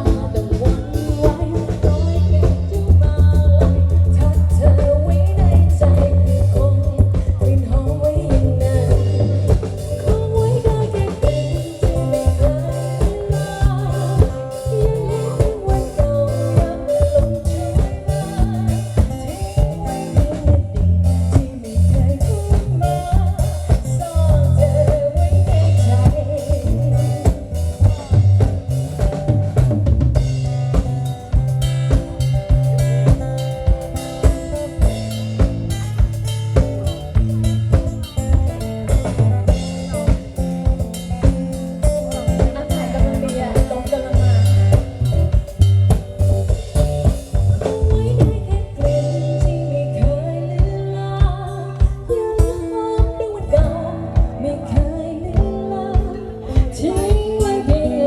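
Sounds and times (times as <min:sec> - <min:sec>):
repeating bass line: 0:00.0 - 0:50.6
drum kit steady beat: 0:00.0 - 0:58.0.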